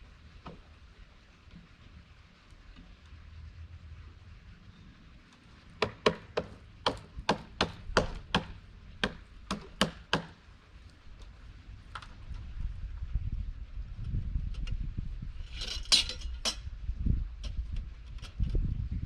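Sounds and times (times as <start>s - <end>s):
sharp knocks on wood: 5.8s - 10.4s.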